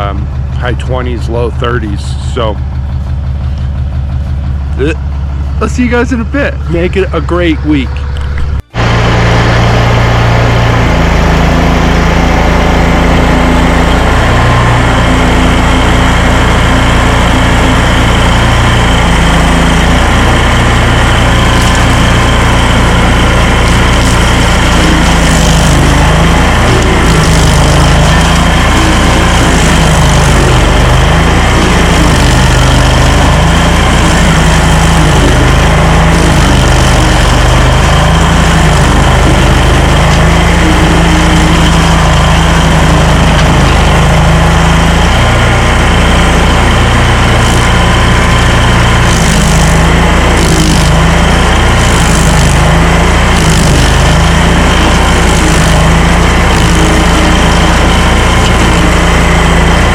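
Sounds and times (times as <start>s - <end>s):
stump grinder engine running hard: 0.0s - 59.9s.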